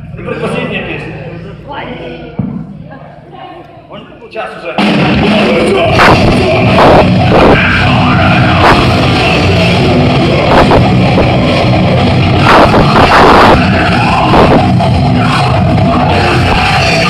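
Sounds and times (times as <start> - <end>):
metal band playing loudly: 4.8 - 17.0.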